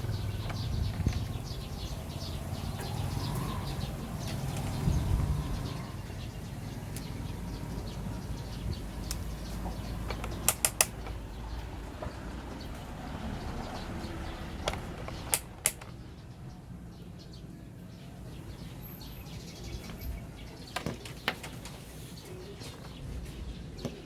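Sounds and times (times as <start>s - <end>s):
sharp clicks and taps: 9.0s - 11.2s, 14.6s - 16.0s.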